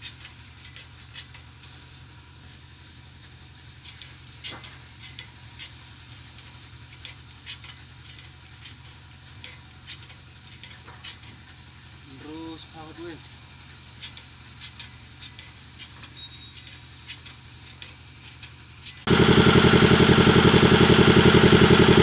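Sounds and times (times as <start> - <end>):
motor droning: 19.1 - 22.0.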